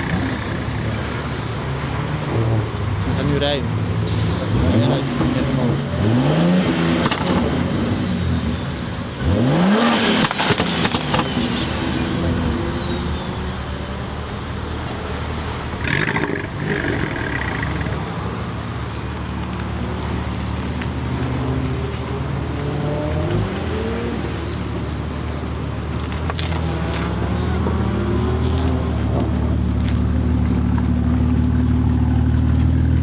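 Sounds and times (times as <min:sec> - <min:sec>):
exhaust crackles: 0:00.0 - 0:14.6, 0:15.7 - 0:33.0
car engine revving: 0:00.0 - 0:14.7, 0:15.3 - 0:33.0.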